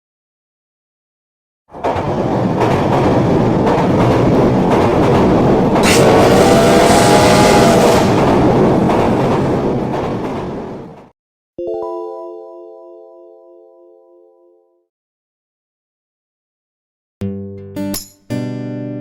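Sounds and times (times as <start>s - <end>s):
train rumbling on rails: 1.7s - 11.2s.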